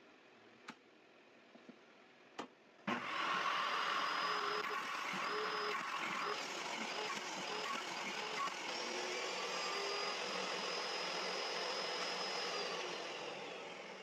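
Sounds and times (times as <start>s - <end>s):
power saw motor running: 2.9s - 14.0s.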